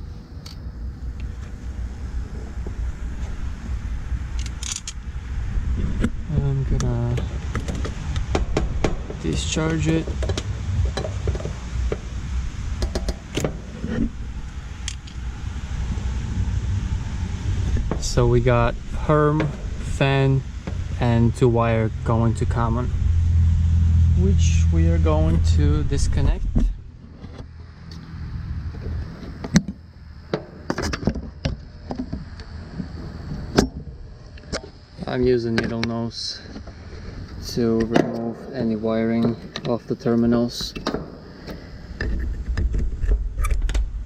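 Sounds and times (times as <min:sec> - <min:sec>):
low steady hum: 0:00.0 - 0:44.0
steady low rumble: 0:00.0 - 0:44.0.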